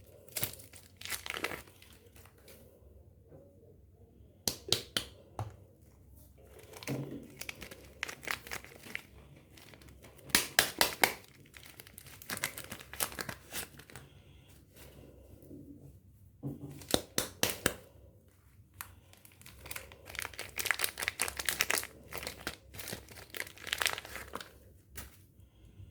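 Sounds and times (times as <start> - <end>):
wrapping crinkling and tearing: 0.0 - 2.7, 6.4 - 14.1, 18.8 - 25.2.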